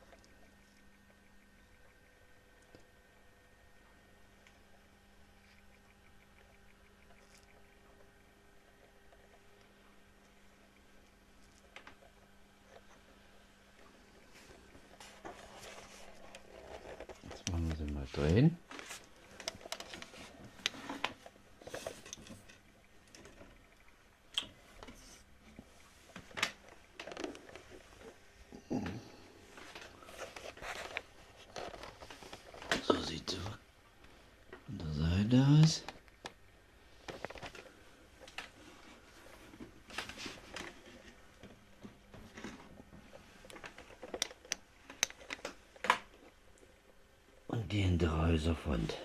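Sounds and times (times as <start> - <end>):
soft rustling: 13.8 - 23.8, 29.4 - 33.0.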